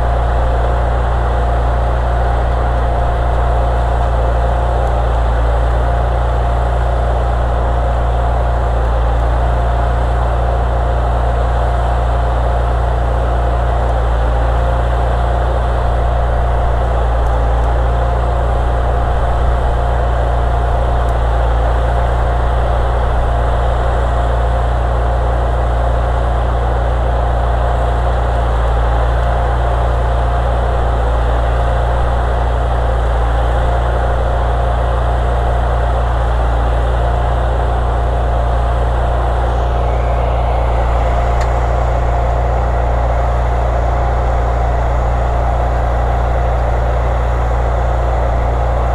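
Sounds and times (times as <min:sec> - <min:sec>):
engine idling: 0:00.0 - 0:48.9
steady mid-pitched tone: 0:38.8 - 0:48.9.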